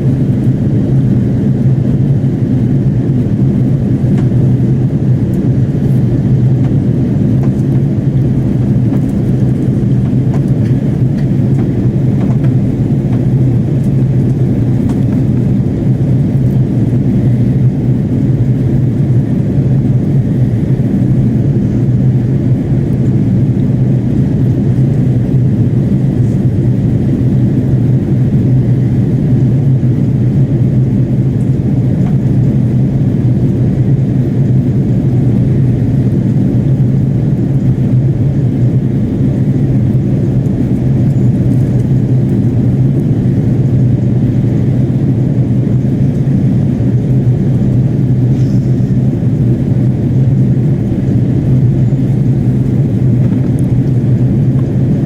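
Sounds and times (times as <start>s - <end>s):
aircraft engine and airflow drone: 0.0s - 55.0s.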